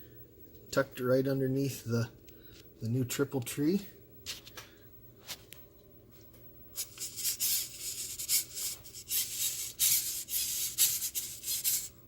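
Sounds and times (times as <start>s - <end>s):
rustling and rubbing scrapes: 6.8s - 12.0s.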